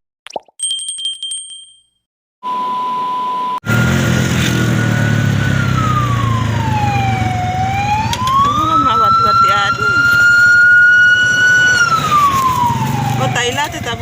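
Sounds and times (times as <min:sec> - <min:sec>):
chime: 0:00.6 - 0:02.0
loud vehicle rumble: 0:03.6 - 0:14.0
siren wailing: 0:04.8 - 0:14.0.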